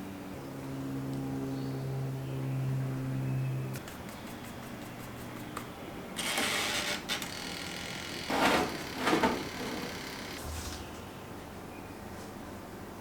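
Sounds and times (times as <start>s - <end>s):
appliance hum: 3.7s - 11.4s.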